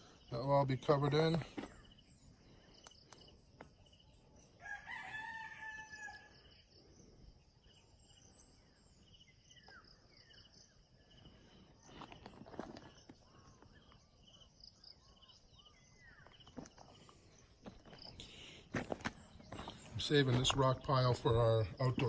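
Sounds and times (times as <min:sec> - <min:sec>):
faint insect chirps: 0:00.0 - 0:20.3
rooster crowing: 0:04.6 - 0:06.4.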